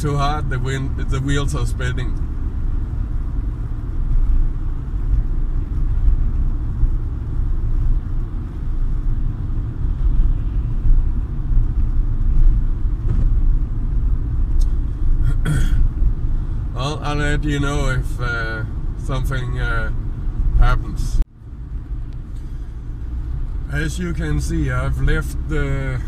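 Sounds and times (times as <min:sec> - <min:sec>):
car driving rumble from inside: 0:00.0 - 0:26.0.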